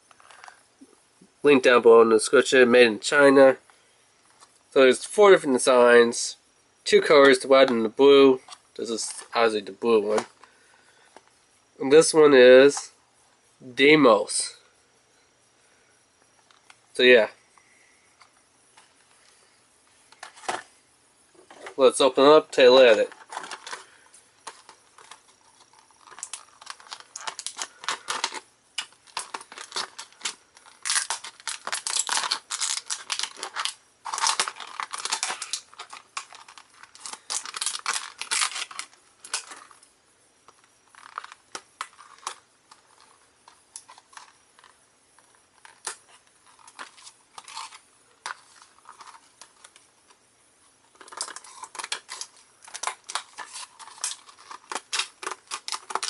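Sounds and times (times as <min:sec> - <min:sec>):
packaging crinkling and tearing: 0:23.0 - 0:39.7, 0:40.9 - 0:43.1, 0:45.6 - 0:49.8, 0:50.9 - 0:56.0.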